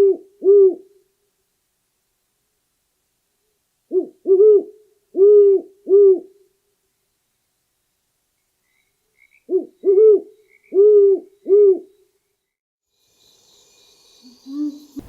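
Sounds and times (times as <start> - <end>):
owl hooting: 0.0 - 0.9, 3.9 - 6.4, 9.2 - 12.0, 14.2 - 15.0.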